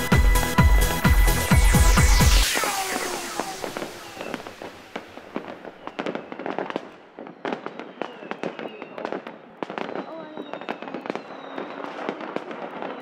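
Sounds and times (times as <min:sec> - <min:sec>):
electronic music with heavy beat: 0:00.0 - 0:05.0
falling whistling sweep: 0:00.0 - 0:09.1, 0:09.8 - 0:11.8, 0:12.7 - 0:13.0
fireworks popping and crackling: 0:01.2 - 0:13.0.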